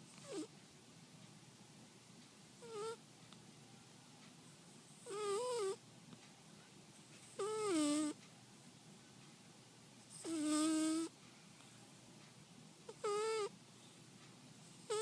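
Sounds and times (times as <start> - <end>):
kitten snoring: 0.0 - 0.5, 2.6 - 3.0, 5.0 - 5.8, 7.3 - 8.2, 10.1 - 11.1, 12.9 - 13.5, 14.8 - 15.0.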